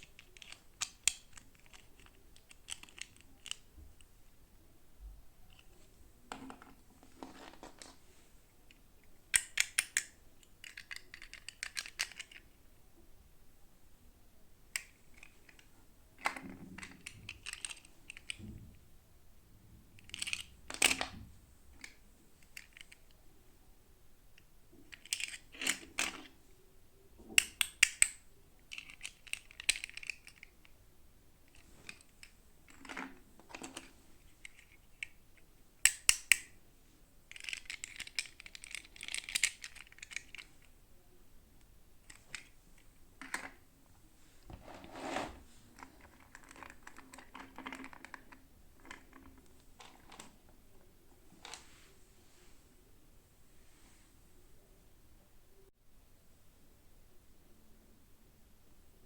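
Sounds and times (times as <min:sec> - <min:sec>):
plastic pieces clicking and tapping: 0:00.0 - 0:03.7, 0:09.3 - 0:12.5, 0:14.7 - 0:18.6, 0:20.0 - 0:21.2, 0:24.4 - 0:26.3, 0:27.3 - 0:30.5, 0:35.8 - 0:36.6, 0:37.3 - 0:40.6, 0:45.8 - 0:50.3.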